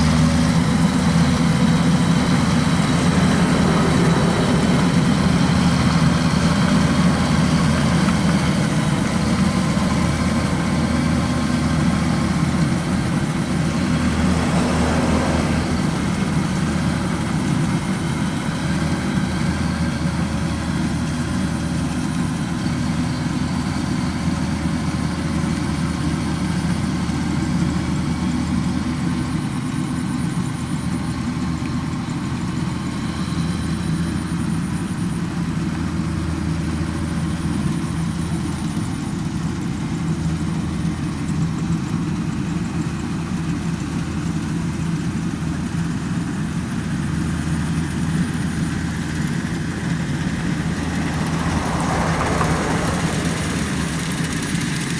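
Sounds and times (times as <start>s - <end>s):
combine harvester diesel engine running: 0.0s - 54.9s.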